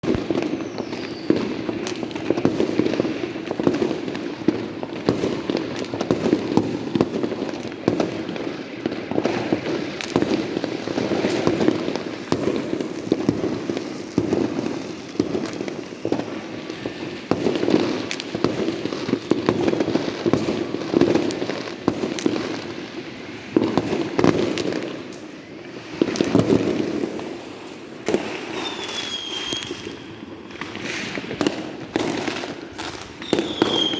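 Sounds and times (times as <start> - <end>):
falling firework whistle: 0.0 - 33.9
fireworks bangs and pops: 0.0 - 33.9.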